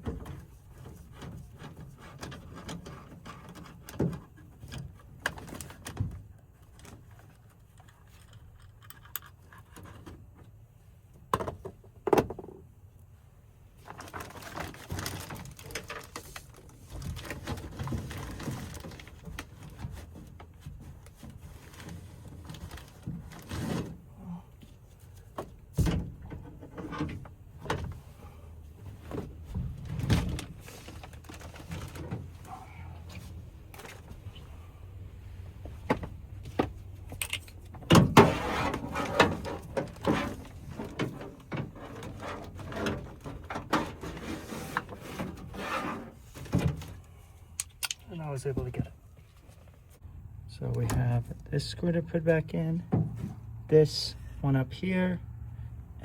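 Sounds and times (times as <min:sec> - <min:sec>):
rummaging scrapes: 0:13.8 - 0:24.2, 0:28.8 - 0:34.4, 0:38.0 - 0:47.0.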